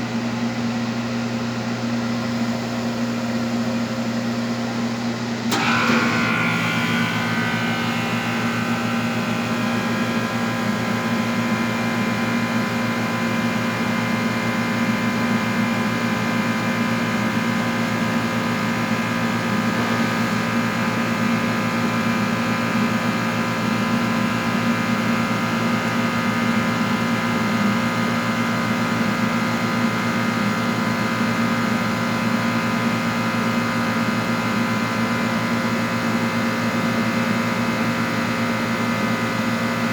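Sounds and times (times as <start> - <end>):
machine humming: 5.4 - 13.0.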